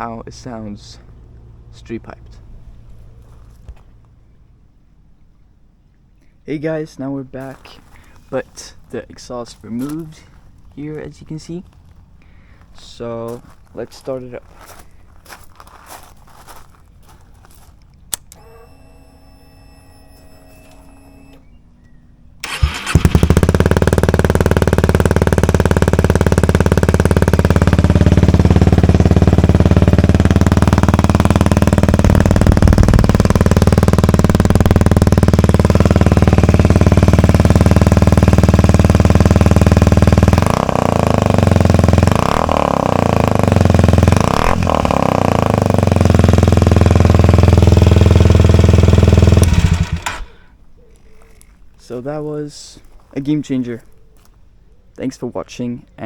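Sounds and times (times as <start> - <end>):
engine throttle blips: 18.1 - 50.6
loud motorcycle engine idling: 22.5 - 50.4.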